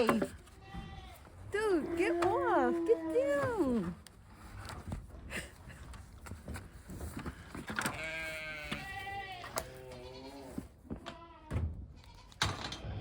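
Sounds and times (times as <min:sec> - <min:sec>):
farm animal bleating: 0:00.0 - 0:03.9, 0:07.8 - 0:13.0.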